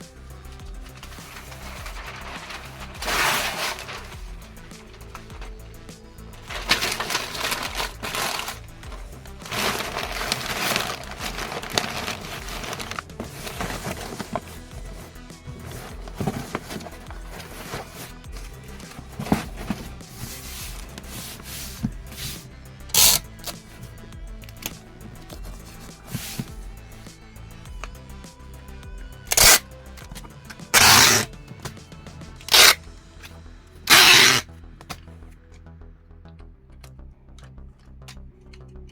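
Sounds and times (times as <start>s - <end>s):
background music with beat: 0.0s - 38.9s
packing material crumpling: 0.8s - 5.8s, 6.4s - 22.2s.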